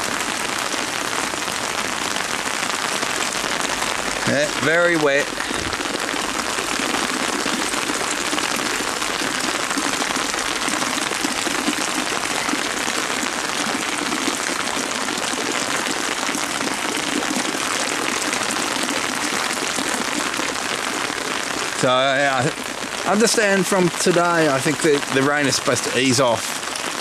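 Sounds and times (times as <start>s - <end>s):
heavy rain falling: 0.0s - 27.0s.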